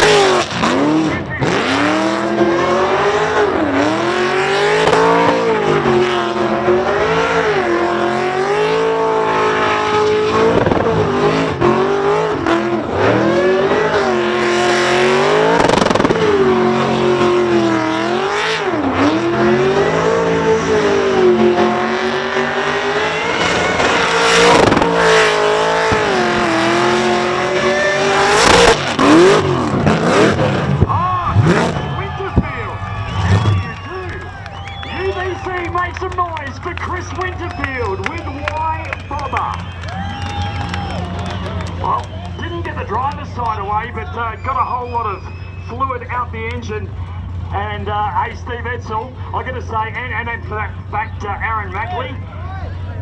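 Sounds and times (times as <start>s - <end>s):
car engine revving: 0.0s - 53.0s
tyres squealing: 22.3s - 47.6s.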